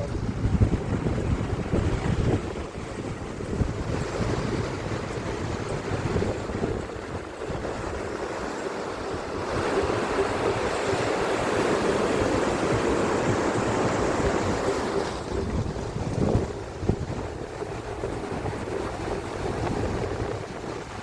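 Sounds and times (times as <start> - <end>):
ocean surf breaking on beach: 0.0 - 21.0
wind buffeting microphone: 0.0 - 21.0.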